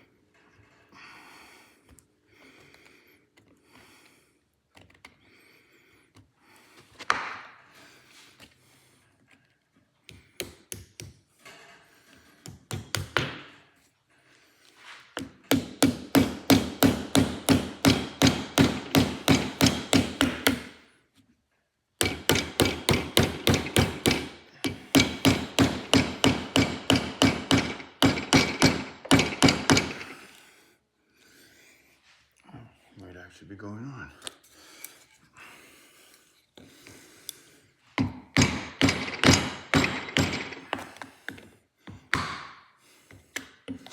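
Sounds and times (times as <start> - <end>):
hammer tapping on metal: 15.2 - 20.7, 22.0 - 30.2, 38.0 - 40.9.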